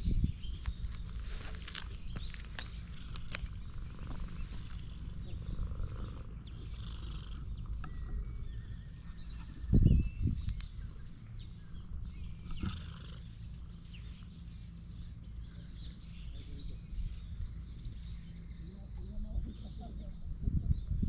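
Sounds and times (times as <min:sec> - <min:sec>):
small birds chirping: 0:00.0 - 0:21.0
cat purring: 0:01.3 - 0:15.4.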